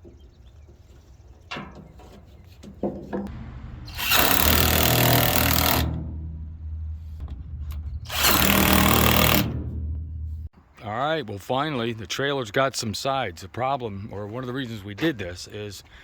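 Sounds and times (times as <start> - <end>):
low steady hum: 3.3 - 10.5
impact gun running: 3.9 - 6.5, 7.2 - 10.0.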